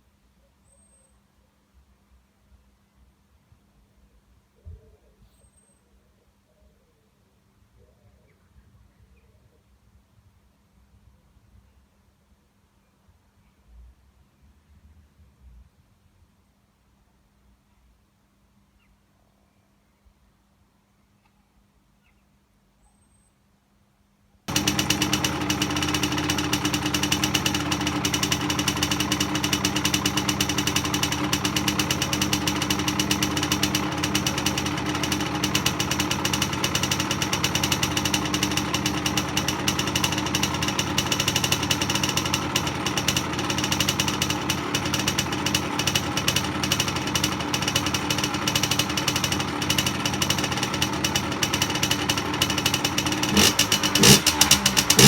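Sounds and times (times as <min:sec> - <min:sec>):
two-stroke engine idling and revving: 0:24.5 - 0:55.0.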